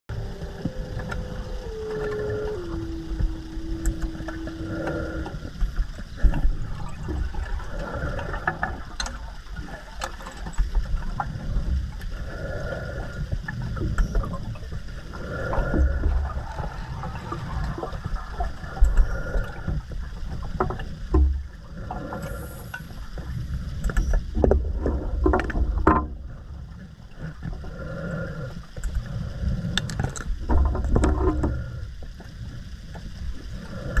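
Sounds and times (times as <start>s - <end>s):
exhaled bubbles rumbling: 0.1s - 34.0s
regulator inhale hiss: 21.6s - 23.8s.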